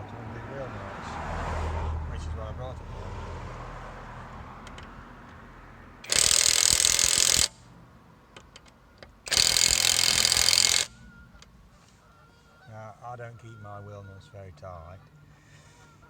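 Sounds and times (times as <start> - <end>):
impact wrench hammering: 6.0 - 7.6, 8.4 - 11.0.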